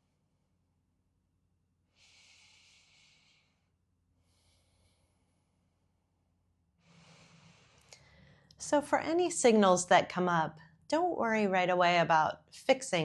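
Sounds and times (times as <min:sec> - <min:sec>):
faint breaths: 0:01.9 - 0:06.0, 0:06.7 - 0:08.6.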